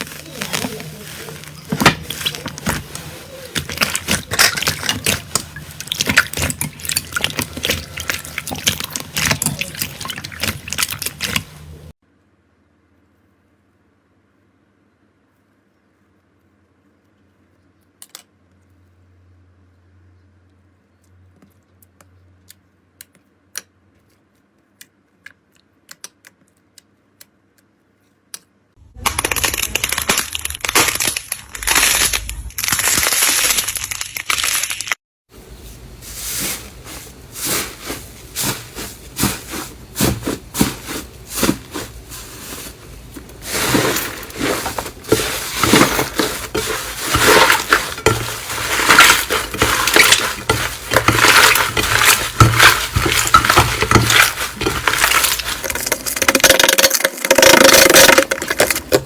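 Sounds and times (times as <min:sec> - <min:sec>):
slime crackling and crunching: 0:00.0 - 0:11.9, 0:29.0 - 0:35.0, 0:36.4 - 0:59.0
slime squishes: 0:00.0 - 0:11.9, 0:36.1 - 0:59.0.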